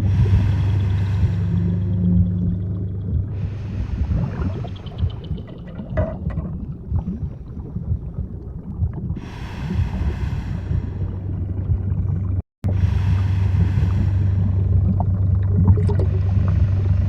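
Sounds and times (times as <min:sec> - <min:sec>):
bubbling hiss: 0:00.0 - 0:17.0
underwater churning rumble: 0:00.0 - 0:17.0.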